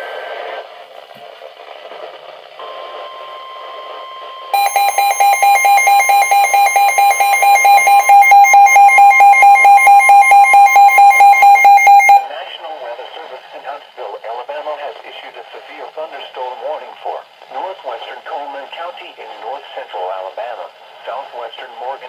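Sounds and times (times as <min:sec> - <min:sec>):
steady alarm tone: 0:02.6 - 0:12.3
rapid beeping alarm: 0:03.0 - 0:12.3.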